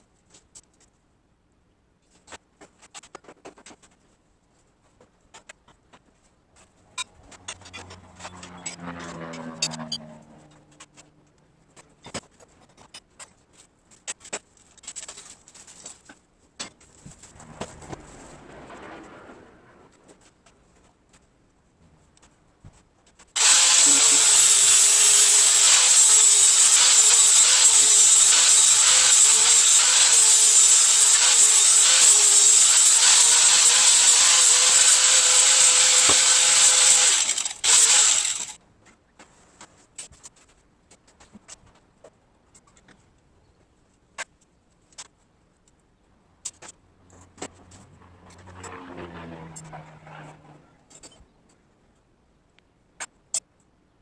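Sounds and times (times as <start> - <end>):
power tool grinding steel: 23.4 - 38.6.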